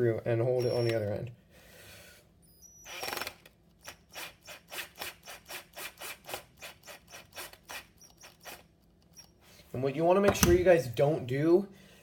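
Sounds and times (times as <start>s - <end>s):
screw rasping into plastic: 2.8s - 9.4s.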